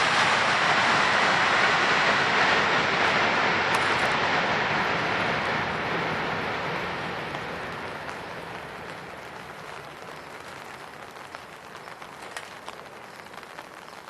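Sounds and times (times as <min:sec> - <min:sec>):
jet engine noise: 0:00.0 - 0:14.0
rain drops ticking: 0:05.4 - 0:14.0.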